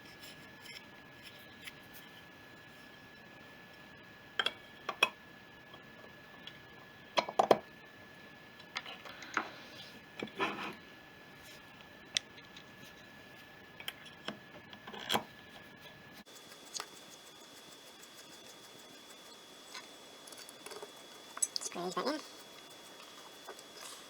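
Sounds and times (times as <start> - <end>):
small parts clicking and scraping: 16.3 - 24.0.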